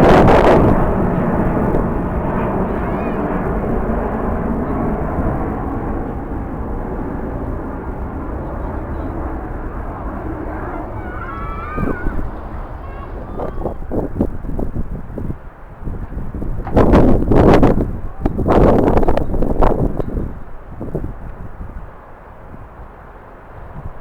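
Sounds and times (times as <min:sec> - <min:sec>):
jet engine noise: 0:00.0 - 0:24.0
faint voices: 0:00.8 - 0:14.8, 0:17.9 - 0:18.7.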